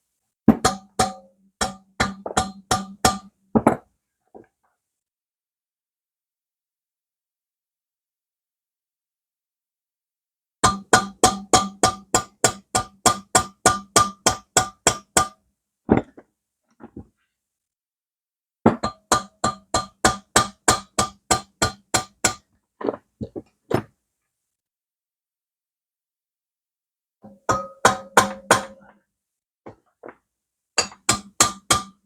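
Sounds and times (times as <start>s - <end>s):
hammer striking ringing metal: 27.5s - 28.8s.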